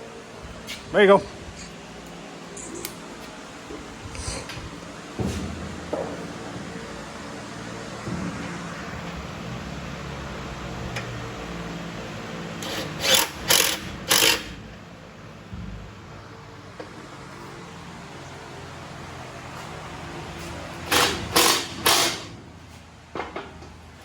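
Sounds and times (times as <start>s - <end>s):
low shop hum: 0.0s - 24.0s
impact wrench bursts: 12.6s - 14.6s, 20.8s - 22.4s.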